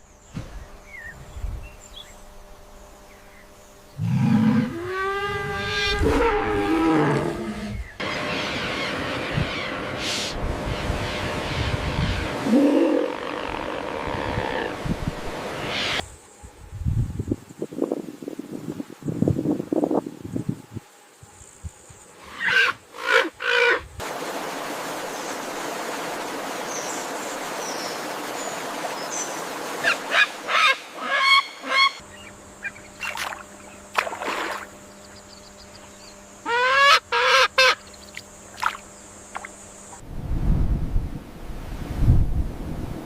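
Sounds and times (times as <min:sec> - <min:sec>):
outdoor background noise: 0:00.0 - 0:43.0
waterfowl honking: 0:29.8 - 0:32.0, 0:36.4 - 0:38.2.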